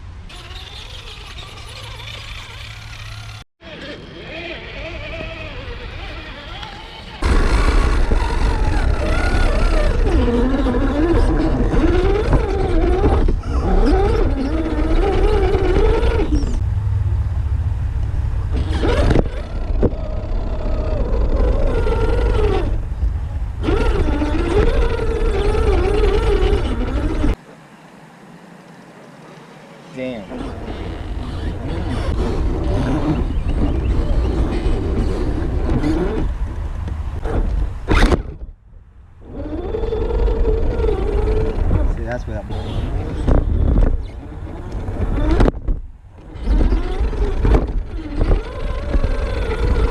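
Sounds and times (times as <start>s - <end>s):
electric motor whining: 0.3s - 27.4s
steady low rumble: 14.2s - 27.4s.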